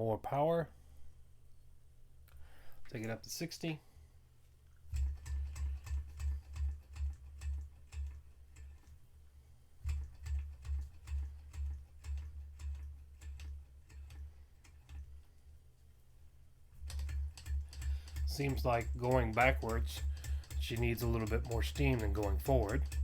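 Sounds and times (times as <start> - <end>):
toy steam engine ticking: 16.8 - 23.0.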